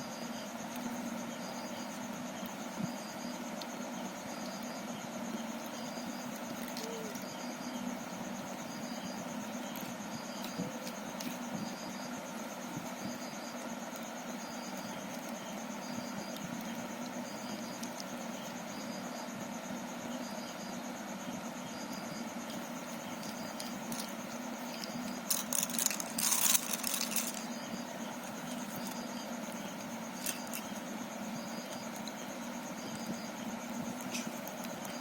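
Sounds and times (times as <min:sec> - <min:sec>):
steady hum: 0:00.0 - 0:35.0
plastic cube clicks and rattles: 0:24.8 - 0:27.4.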